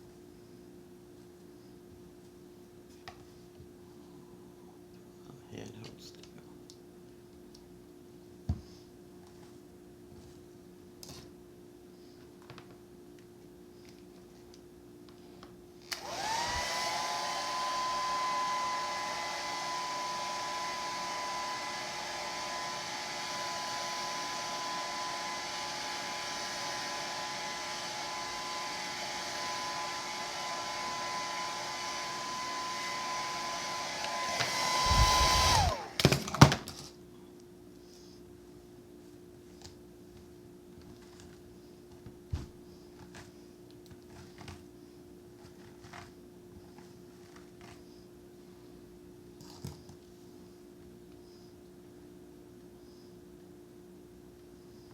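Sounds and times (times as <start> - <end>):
hair dryer blowing: 15.8 - 36.4.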